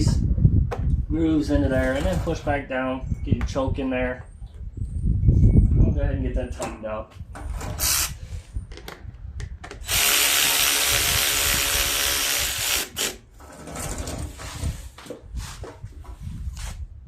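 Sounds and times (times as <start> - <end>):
cordless power driver running: 9.8 - 13.2.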